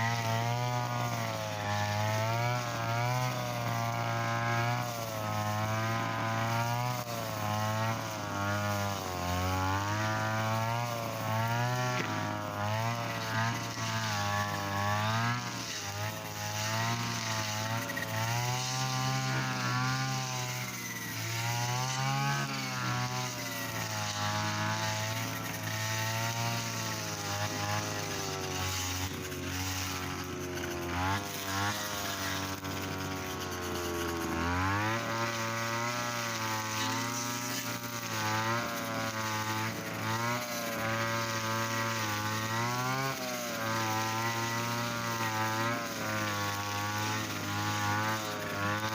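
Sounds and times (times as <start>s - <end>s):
brush cutter engine running: 0.0s - 48.9s.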